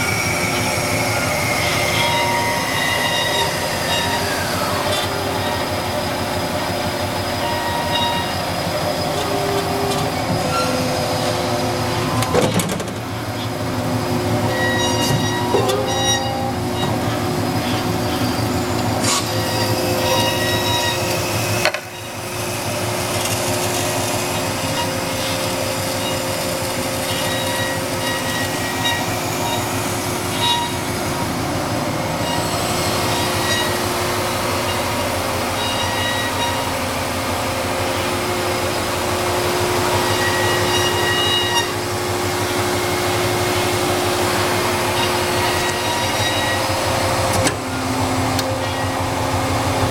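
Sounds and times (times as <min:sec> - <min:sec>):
high ringing tones: 0:00.0 - 0:12.3, 0:14.4 - 0:17.2, 0:19.4 - 0:22.3, 0:32.2 - 0:36.8, 0:39.8 - 0:41.8
band saw cutting metal: 0:00.0 - 0:49.9.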